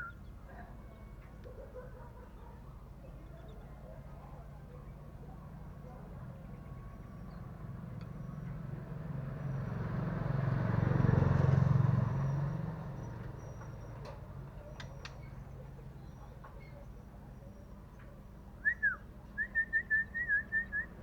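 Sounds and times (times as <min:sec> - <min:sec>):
vehicle driving past: 0:07.4 - 0:14.4.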